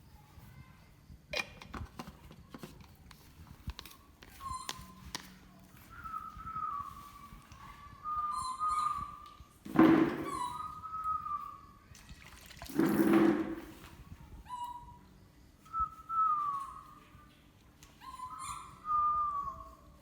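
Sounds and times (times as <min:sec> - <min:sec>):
baby monkey whistle-like cries: 0:04.4 - 0:05.0, 0:06.0 - 0:09.4, 0:10.2 - 0:11.7, 0:14.5 - 0:15.1, 0:18.0 - 0:20.0.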